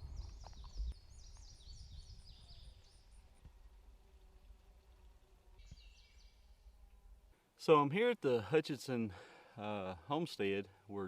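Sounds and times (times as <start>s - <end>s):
songbird singing: 0.0s - 7.3s.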